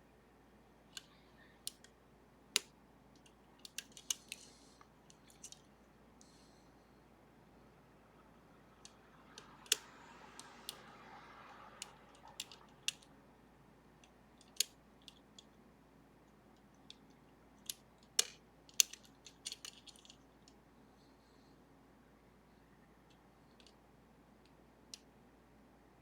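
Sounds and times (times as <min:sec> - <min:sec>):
lock-picking metal clicks: 0:00.9 - 0:06.3, 0:16.6 - 0:20.6.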